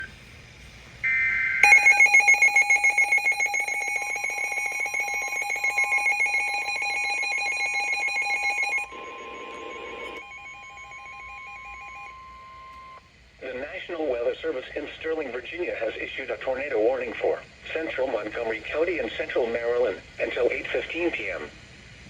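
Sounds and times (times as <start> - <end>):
alternating data tones: 1.0 - 13.0
rapidly pulsing electronic alarm: 1.0 - 13.0
steady warning alarm tone: 1.0 - 13.1.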